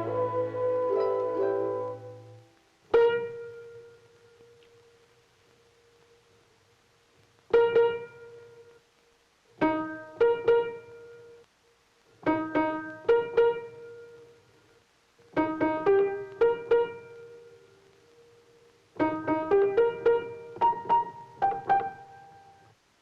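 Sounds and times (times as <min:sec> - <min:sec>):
piano notes and chords: 0:00.0 - 0:04.9, 0:07.5 - 0:08.8, 0:09.6 - 0:11.4, 0:12.2 - 0:14.4, 0:15.3 - 0:22.8
faint steady held tone: 0:00.0 - 0:22.8.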